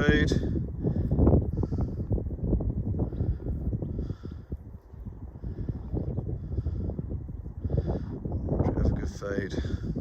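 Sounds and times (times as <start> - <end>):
wind buffeting microphone: 0.0 - 10.0.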